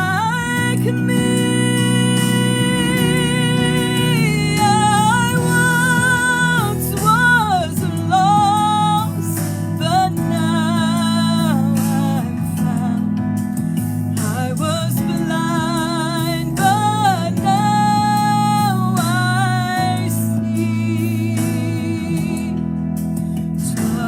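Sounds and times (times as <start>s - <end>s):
person singing with vibrato: 0.0s - 24.0s
sustained instrumental chords: 0.0s - 24.0s.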